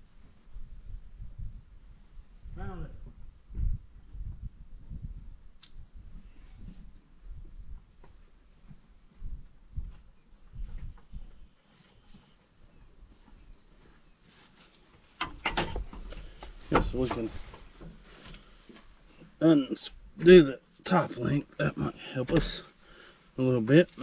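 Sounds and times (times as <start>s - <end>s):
crickets chirping: 0.0s - 24.0s
dull low thumps: 0.5s - 11.4s.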